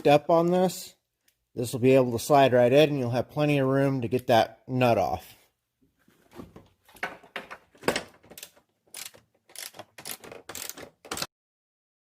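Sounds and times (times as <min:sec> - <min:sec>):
ratchet clicking: 0:08.4 - 0:11.3.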